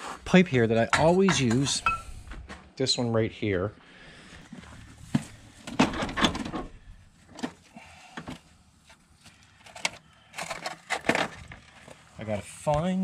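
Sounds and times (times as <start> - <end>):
metal tools knocking and clattering: 0.9 - 2.1.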